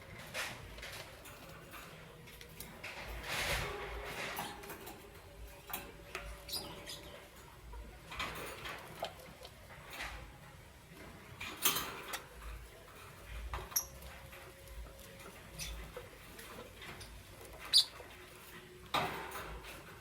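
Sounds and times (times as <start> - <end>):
lovebirds chirping: 5.3 - 8.0, 13.4 - 18.8.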